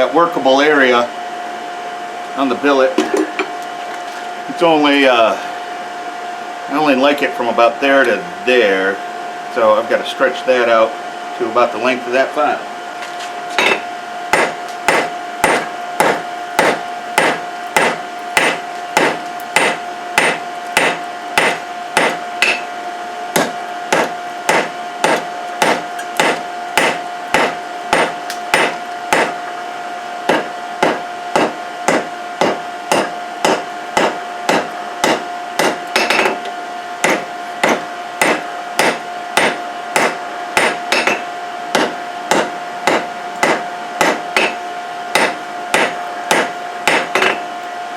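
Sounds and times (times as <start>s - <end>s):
steady blower hum: 0.0s - 47.9s
hammer striking steel on anvil: 13.6s - 13.8s, 14.4s - 22.7s, 23.4s - 29.3s, 30.3s - 36.4s, 37.0s - 44.6s, 45.2s - 47.4s.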